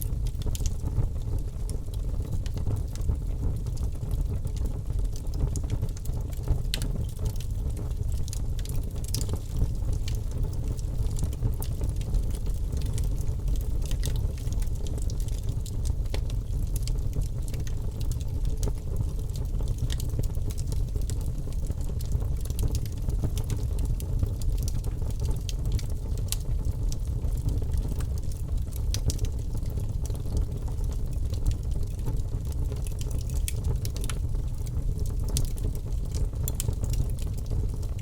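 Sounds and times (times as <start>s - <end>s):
logs crackling and popping: 0.0s - 38.0s
low rumble of flames: 0.0s - 38.0s.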